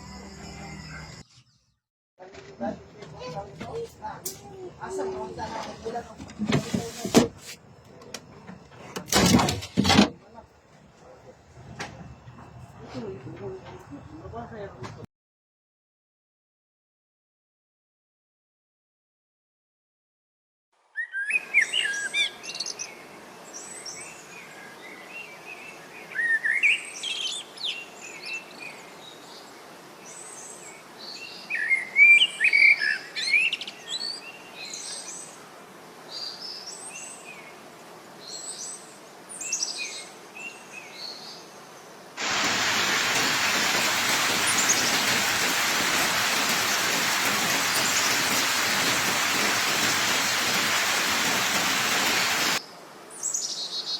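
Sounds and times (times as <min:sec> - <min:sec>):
steady loud hiss: 0:33.0 - 0:53.4
small birds chirping: 0:38.2 - 0:53.9.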